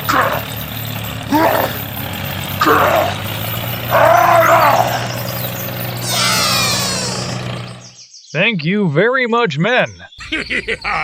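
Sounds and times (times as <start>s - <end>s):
person shouting short calls: 6.0s - 7.4s.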